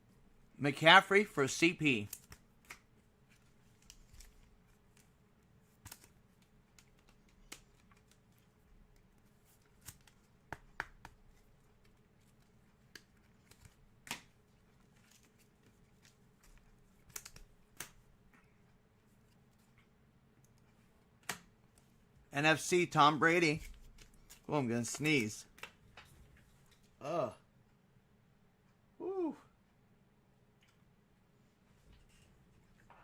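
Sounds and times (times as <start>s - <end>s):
trading cards clicking and snapping: 2.0s - 2.9s, 5.7s - 14.4s, 15.0s - 18.0s, 21.2s - 21.5s.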